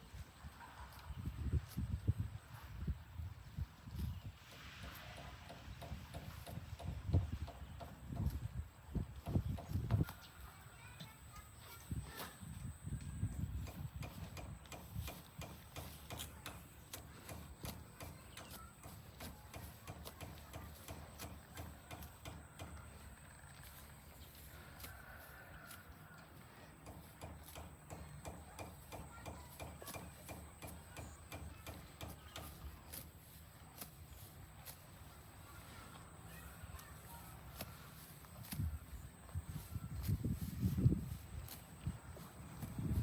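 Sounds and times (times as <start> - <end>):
cattle hooves clopping: 14.0 - 33.9.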